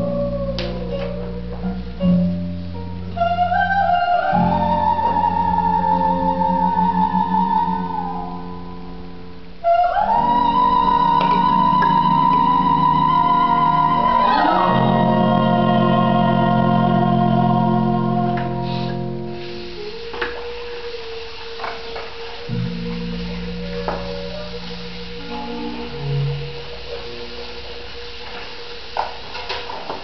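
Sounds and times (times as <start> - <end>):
background music of held chords: 0.0 - 29.4.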